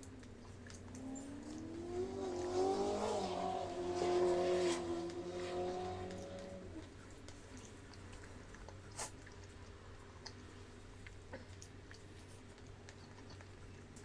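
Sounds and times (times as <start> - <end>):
faint low hum: 0.0 - 14.0
person chewing: 6.2 - 14.0.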